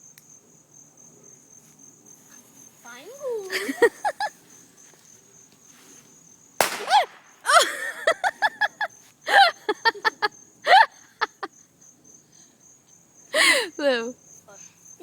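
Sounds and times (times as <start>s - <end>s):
crickets chirping: 0.0s - 15.0s
firework bang: 6.6s - 7.5s.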